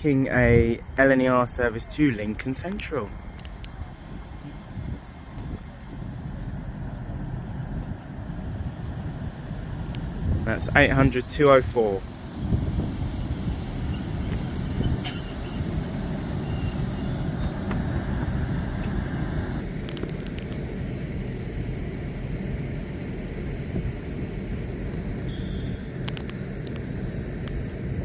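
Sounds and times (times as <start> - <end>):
train low rumble: 0.0 - 28.0
high brake squeal: 1.8 - 6.9, 8.3 - 18.4, 25.2 - 25.9.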